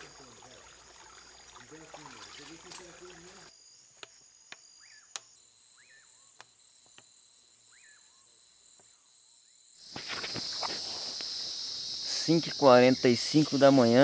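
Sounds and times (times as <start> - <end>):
insects chirring: 0.0 - 14.0
loud dense insect chorus: 0.0 - 14.0
rising-and-falling insect call: 2.8 - 14.0.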